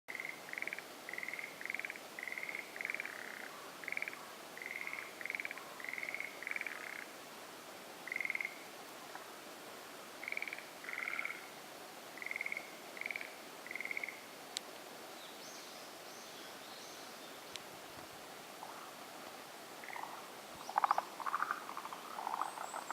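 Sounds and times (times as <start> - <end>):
tree frogs croaking: 0.1 - 7.2, 8.0 - 9.4, 10.2 - 14.3, 17.4 - 22.9.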